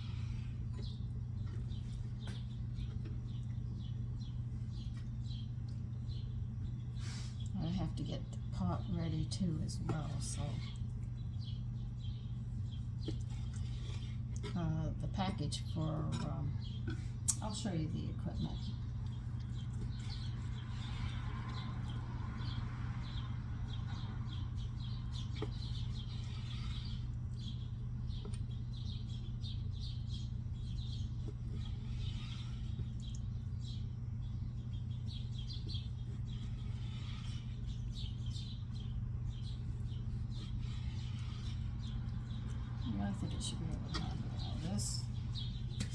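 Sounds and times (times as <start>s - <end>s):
low electrical hum: 0.0s - 45.9s
small bird chirping: 18.2s - 45.9s.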